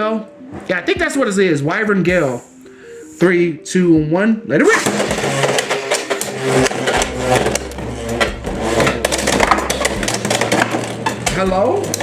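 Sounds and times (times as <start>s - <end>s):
spinning tops whirring on plastic: 4.7s - 12.0s.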